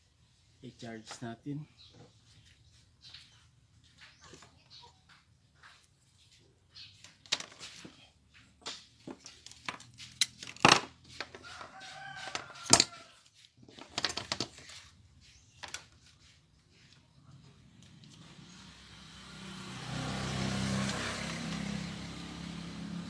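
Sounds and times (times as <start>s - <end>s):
parts clicking and knocking: 7.0s - 11.6s, 12.2s - 13.0s, 13.6s - 14.9s
rooster crowing: 11.3s - 13.3s.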